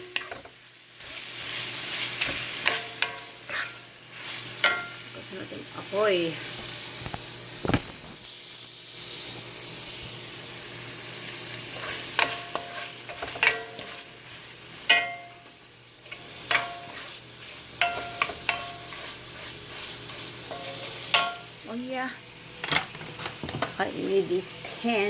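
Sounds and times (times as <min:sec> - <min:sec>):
metal utensil clinking on pan: 0:00.0 - 0:00.5, 0:02.2 - 0:03.8, 0:04.6 - 0:05.0, 0:12.2 - 0:14.0, 0:14.9 - 0:15.5, 0:16.1 - 0:17.1, 0:17.8 - 0:19.1, 0:20.5 - 0:21.5
meat sizzling in a pan: 0:00.0 - 0:25.0.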